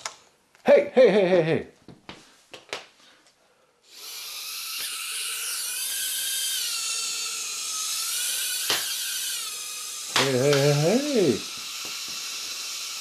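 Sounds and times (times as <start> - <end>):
quadcopter propeller whine: 4.5 - 13.0.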